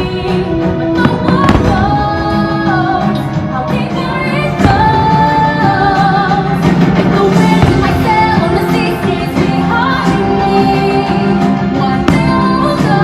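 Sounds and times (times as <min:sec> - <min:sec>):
woman singing pop song: 0:00.0 - 0:13.0
firework bursts booming: 0:01.0 - 0:02.8, 0:07.4 - 0:09.5.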